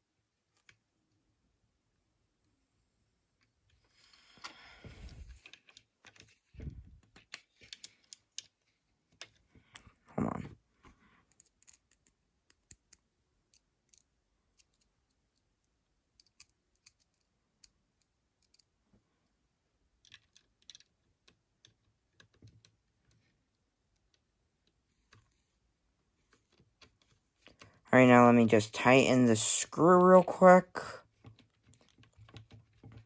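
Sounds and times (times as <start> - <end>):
small plastic parts clicking: 3.7 - 10.0, 11.2 - 18.8, 20.0 - 25.4, 31.2 - 33.0.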